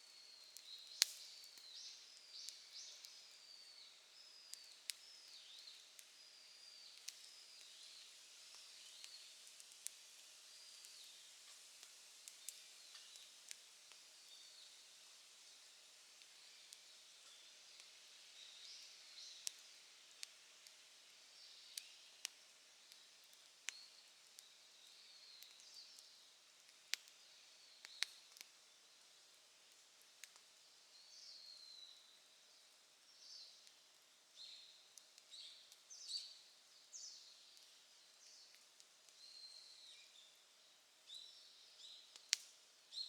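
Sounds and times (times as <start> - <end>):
wood fire crackling: 0.0 - 43.0
fire popping: 0.4 - 3.3, 21.8 - 30.6.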